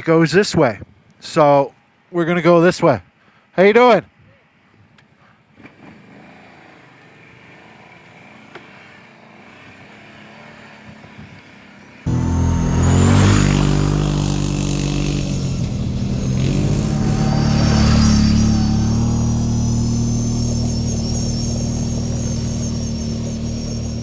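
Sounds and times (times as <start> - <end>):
atv engine running: 6.2 - 24.0.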